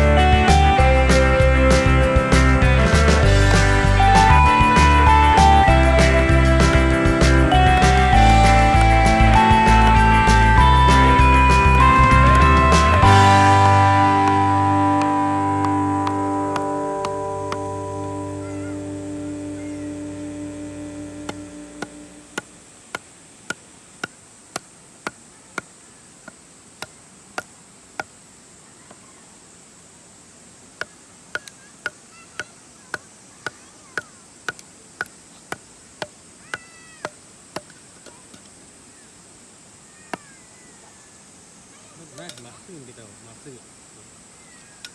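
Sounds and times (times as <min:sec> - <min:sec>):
guitar music: 0:00.0 - 0:22.4
high insect drone: 0:00.0 - 0:44.9.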